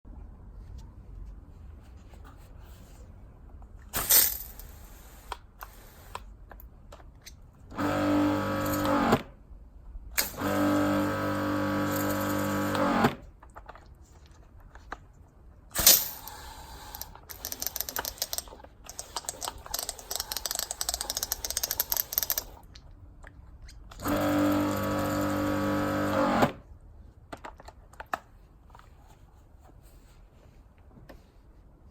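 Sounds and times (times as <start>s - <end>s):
pressure washer motor humming: 10.4s - 13.0s, 24.0s - 26.4s.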